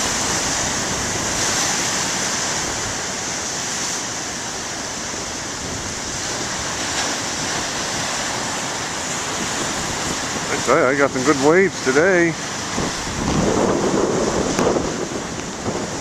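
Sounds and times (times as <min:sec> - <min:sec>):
ocean waves breaking on shore: 0:00.0 - 0:16.0.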